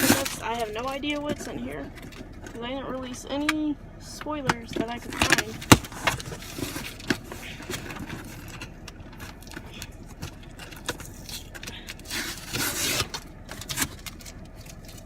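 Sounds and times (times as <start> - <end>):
cardboard box being opened: 0.0 - 0.8
packaging rustling: 0.0 - 2.4
packaging clicking and scraping: 0.0 - 2.6, 4.7 - 15.0.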